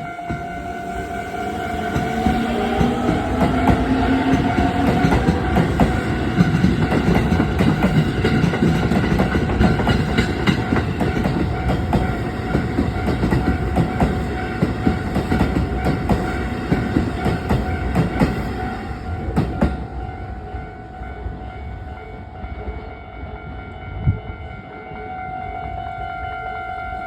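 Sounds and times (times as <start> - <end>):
crossing warning alarm ringing: 0.0 - 27.0
train wheels clacking over rail joints: 2.0 - 19.8.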